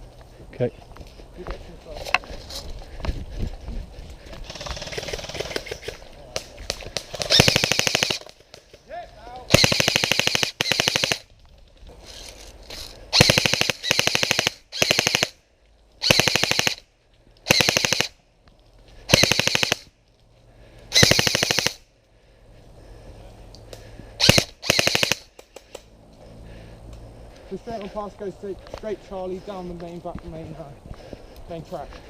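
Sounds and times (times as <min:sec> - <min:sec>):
airsoft rifle full-auto bursts: 0:04.4 - 0:06.0, 0:07.0 - 0:08.2, 0:09.5 - 0:11.3, 0:13.1 - 0:15.4, 0:16.0 - 0:16.8, 0:17.4 - 0:18.2, 0:19.1 - 0:19.9, 0:20.9 - 0:21.8, 0:24.2 - 0:25.3.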